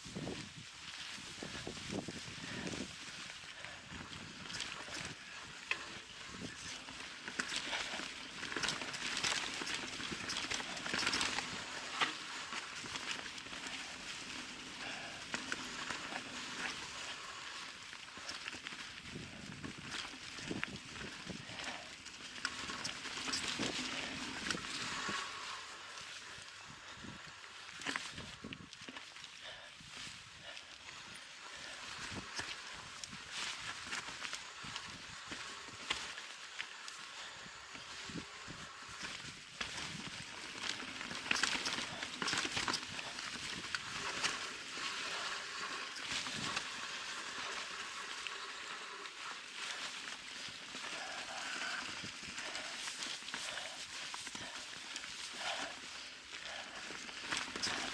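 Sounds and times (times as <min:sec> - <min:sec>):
wind noise: 0:00.0 - 0:06.8, 0:19.0 - 0:21.9
bike tyres crunching on dirt: 0:00.0 - 0:57.9
bike rattling over bumps: 0:04.0 - 0:29.1, 0:30.8 - 0:57.9.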